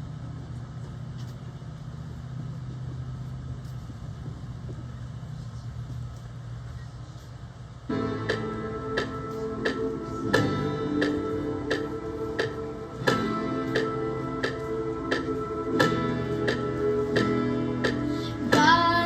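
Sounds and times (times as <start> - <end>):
steady low hum: 0.0 - 19.0
instrumental song introduction: 7.9 - 19.0.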